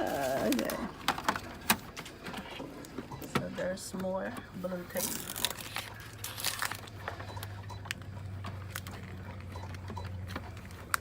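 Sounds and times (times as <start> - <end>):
plastic crinkles and clicks: 0.0 - 3.0, 4.9 - 11.0
tape being peeled: 5.0 - 6.9.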